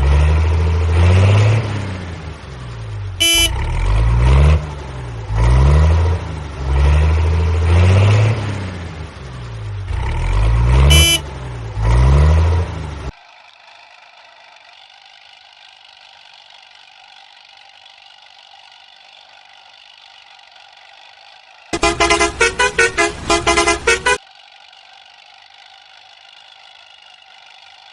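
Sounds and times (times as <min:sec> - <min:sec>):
vehicle engine revving: 0:00.0 - 0:13.1, 0:21.8 - 0:24.2
short horn toot: 0:03.2 - 0:03.7, 0:10.9 - 0:11.2, 0:21.8 - 0:24.2.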